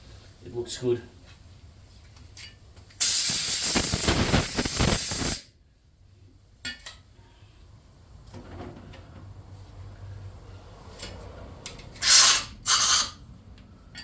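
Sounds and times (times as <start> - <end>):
compressed air blast hissing: 3.0 - 5.5.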